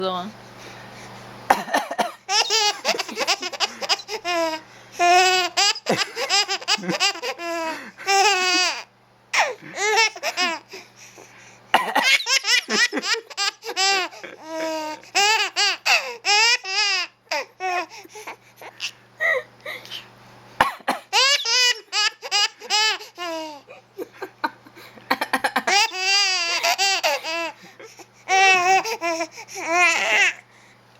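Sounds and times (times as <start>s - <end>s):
adult coughing: 1.5s - 2.3s, 5.9s - 6.2s, 11.7s - 12.2s, 20.6s - 21.1s
baby laughing: 2.2s - 10.8s, 11.8s - 19.4s, 21.1s - 24.4s, 25.1s - 30.4s.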